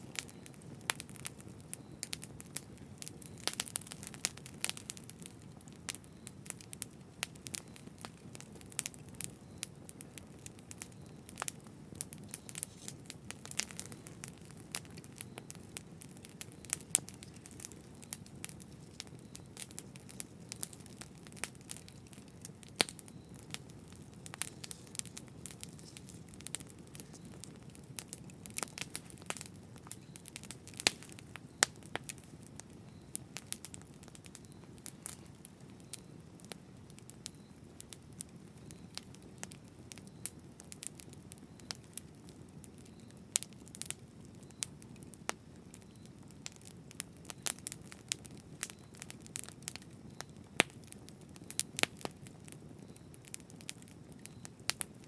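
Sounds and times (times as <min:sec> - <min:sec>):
campfire pops and snaps: 0:00.0 - 0:55.0
low rush of flames: 0:05.8 - 0:38.8.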